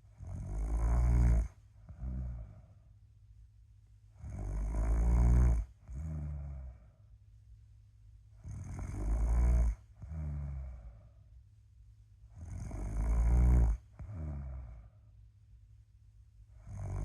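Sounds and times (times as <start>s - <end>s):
person snoring: 0.2s - 2.8s, 4.2s - 6.9s, 8.4s - 11.0s, 12.4s - 14.9s, 16.6s - 17.0s.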